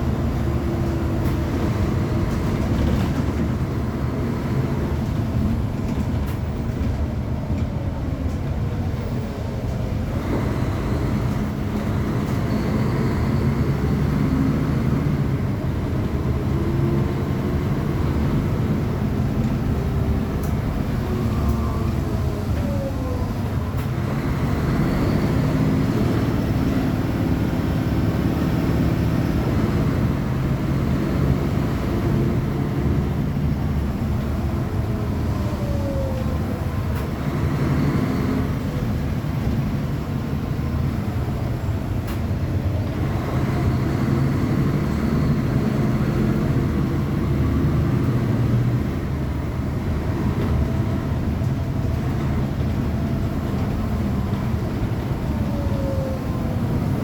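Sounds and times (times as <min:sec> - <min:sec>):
bus diesel engine running: 0:00.0 - 0:57.0.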